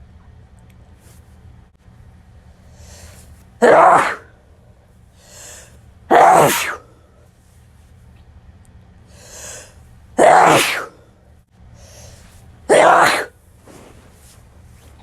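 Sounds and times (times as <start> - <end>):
person sneezing: 2.9 - 4.3, 5.3 - 6.9, 9.3 - 11.0, 12.7 - 13.9.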